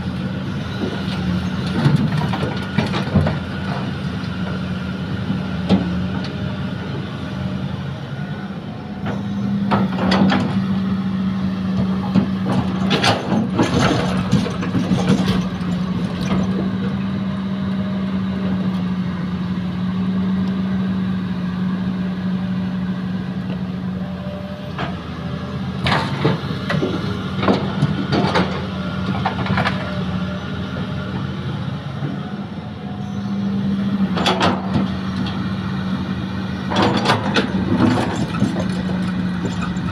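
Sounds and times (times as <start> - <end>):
excavator diesel engine running: 0.0 - 39.9
clattering and clanking: 36.7 - 39.9.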